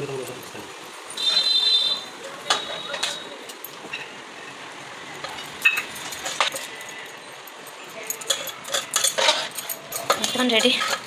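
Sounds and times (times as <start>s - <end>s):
metal spoon clinking on pan: 2.3s - 4.1s, 5.2s - 11.0s.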